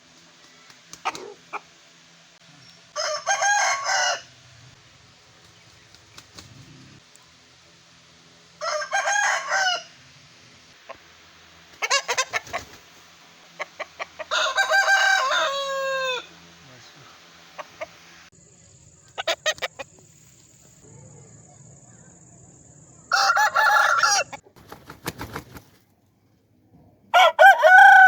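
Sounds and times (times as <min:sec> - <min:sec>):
roosters crowing: 0:02.8 - 0:04.8, 0:08.4 - 0:11.1, 0:11.8 - 0:18.3, 0:23.0 - 0:24.5, 0:27.1 - 0:28.0.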